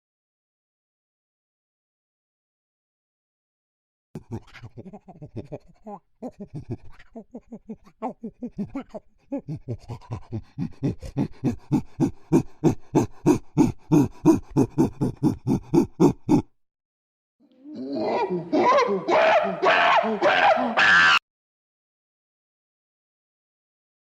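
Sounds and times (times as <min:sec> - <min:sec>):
chimpanzee panting: 0:04.2 - 0:16.5.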